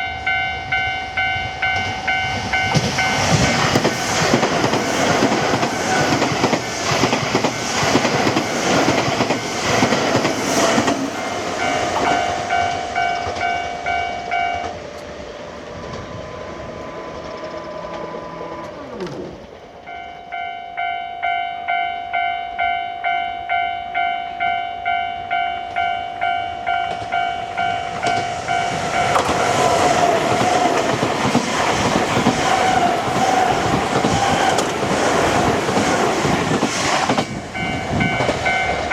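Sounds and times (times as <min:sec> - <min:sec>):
level-crossing warning bell: 0:00.0 - 0:38.9
train wheels clattering over rails: 0:01.6 - 0:19.6, 0:25.7 - 0:38.9.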